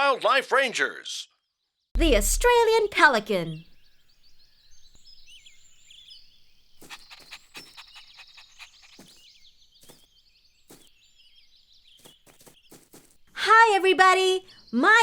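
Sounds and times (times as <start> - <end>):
small birds or insects chirping: 2.0 - 13.9.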